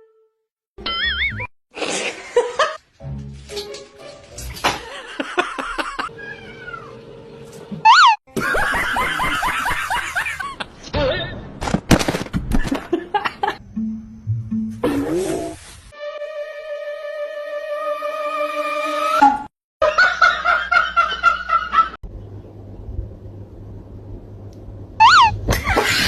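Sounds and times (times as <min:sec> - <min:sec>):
music: 0:00.0 - 0:00.4, 0:02.8 - 0:04.9, 0:13.6 - 0:15.2, 0:15.9 - 0:19.5
people laughing: 0:04.8 - 0:06.1, 0:08.4 - 0:10.8
cats meowing and caterwauling: 0:06.1 - 0:07.0, 0:07.9 - 0:08.2, 0:25.0 - 0:25.4.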